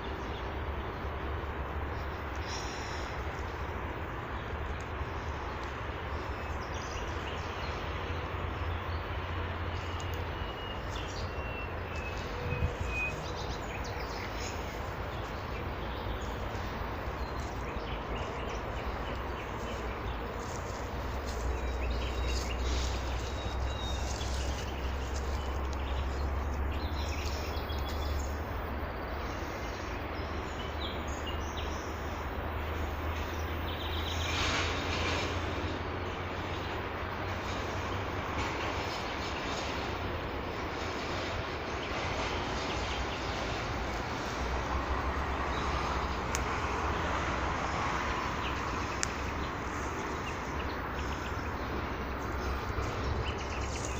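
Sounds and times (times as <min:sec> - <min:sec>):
steady background rumble and hiss: 0:00.0 - 0:53.9
small birds chirping: 0:04.4 - 0:28.5, 0:48.0 - 0:53.9.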